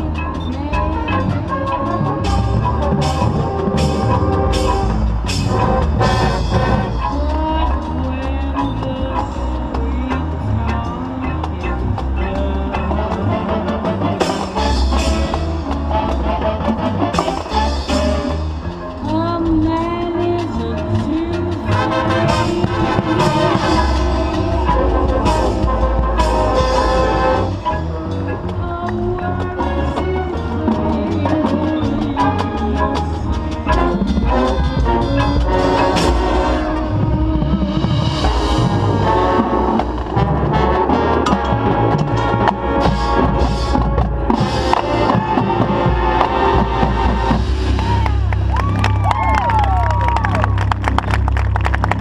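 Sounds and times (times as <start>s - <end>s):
brass sustaining chords: 0.0s - 52.0s
marching band playing: 0.0s - 52.0s
drumline strikes: 1.6s - 7.8s, 11.4s - 19.2s, 20.9s - 27.8s, 31.9s - 52.0s.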